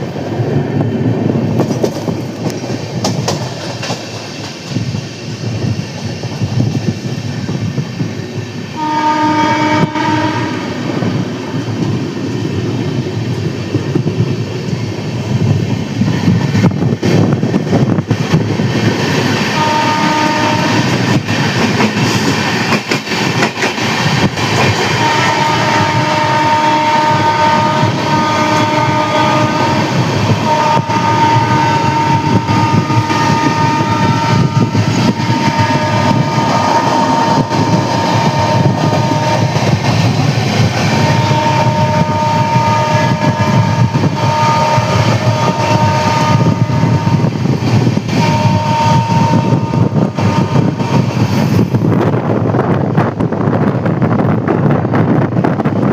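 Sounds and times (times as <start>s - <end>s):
train wheels clattering on track: 0.0s - 55.9s
locomotive horn blasts: 8.8s - 10.8s, 19.6s - 21.0s, 25.0s - 39.7s, 41.0s - 47.3s, 48.1s - 51.2s.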